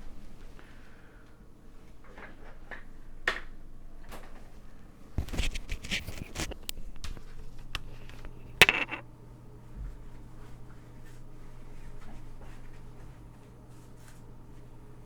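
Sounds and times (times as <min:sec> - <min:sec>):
low electrical hum: 0:00.0 - 0:15.0
rustling and knocking: 0:07.8 - 0:09.0.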